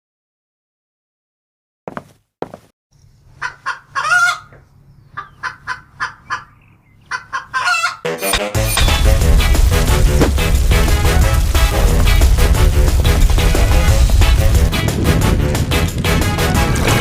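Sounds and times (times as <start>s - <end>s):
chicken clucking: 3.3s - 8.2s
loud music: 8.1s - 17.0s.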